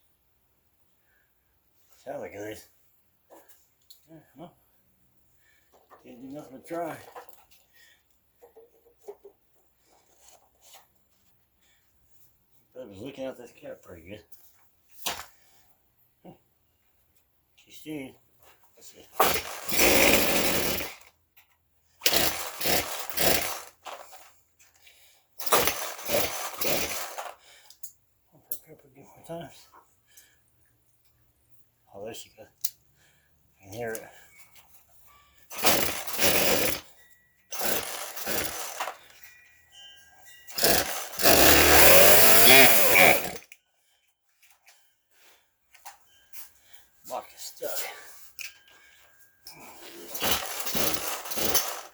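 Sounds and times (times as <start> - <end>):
chainsaw engine cranking: 19.2 - 21.1, 22.0 - 24.4, 25.4 - 27.4, 35.5 - 39.4, 40.5 - 43.5, 49.6 - 51.9
chainsaw recoil starter pulled: 19.2 - 21.1, 22.0 - 24.4, 25.4 - 27.4, 35.5 - 39.2, 40.5 - 43.5, 49.8 - 51.9.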